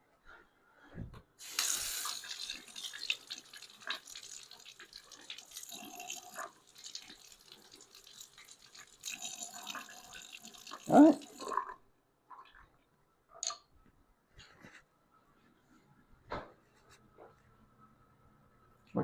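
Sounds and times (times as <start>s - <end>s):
water splashing from faucet: 1.4s - 11.7s.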